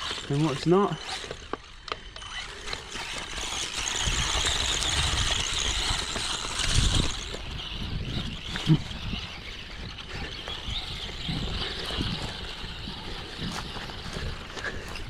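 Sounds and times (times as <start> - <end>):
electric motor whining: 0.0 - 15.0.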